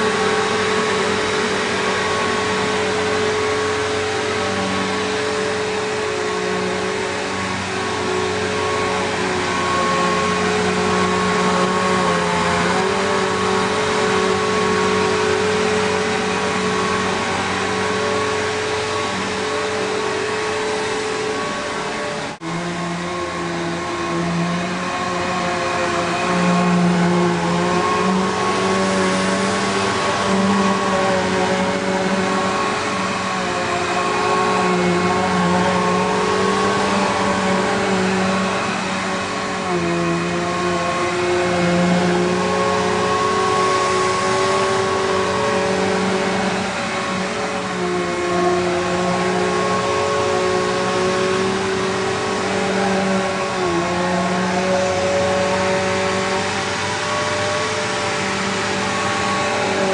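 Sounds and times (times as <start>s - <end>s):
vacuum cleaner running: 0.0s - 59.9s.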